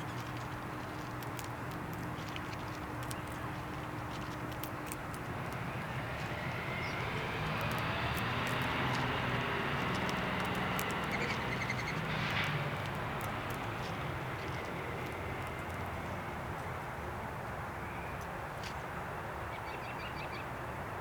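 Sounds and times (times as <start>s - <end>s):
distant engine passing: 4.6s - 16.8s.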